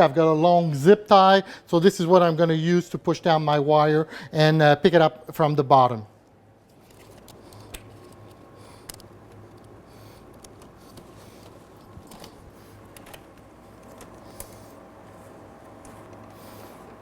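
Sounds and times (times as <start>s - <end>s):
low steady hum: 0.0s - 17.0s.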